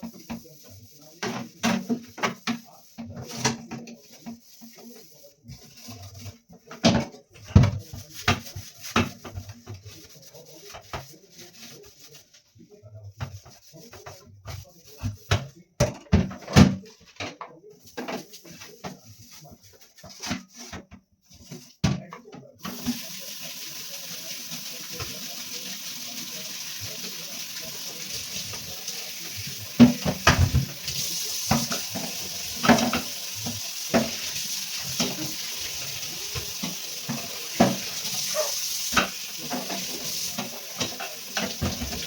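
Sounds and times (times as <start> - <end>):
running tap water: 22.6 - 42.0.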